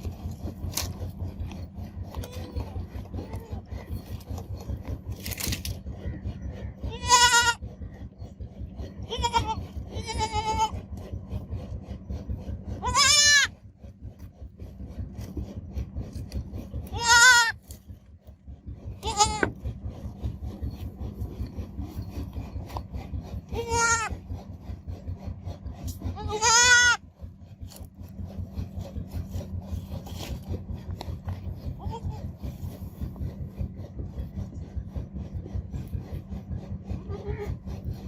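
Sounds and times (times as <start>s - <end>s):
low rasping rubbing noise: 0.0s - 38.0s
baby goat bleating: 2.1s - 3.8s, 6.9s - 7.6s, 9.0s - 10.8s, 12.8s - 13.5s, 16.9s - 17.6s, 19.0s - 19.6s, 23.5s - 24.2s, 26.1s - 27.0s, 31.7s - 32.2s.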